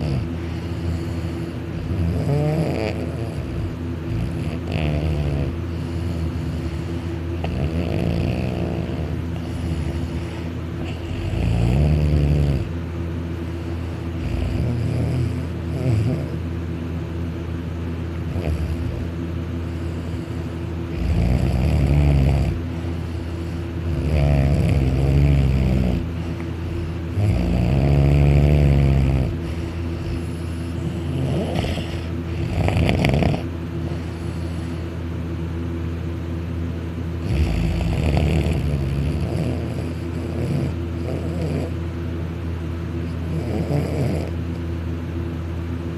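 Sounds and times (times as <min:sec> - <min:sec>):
man snoring loudly: 0:00.0 - 0:12.8, 0:13.9 - 0:16.4, 0:18.3 - 0:19.1, 0:19.7 - 0:33.5, 0:37.2 - 0:41.8, 0:43.2 - 0:44.4
steady low hum: 0:00.0 - 0:45.9.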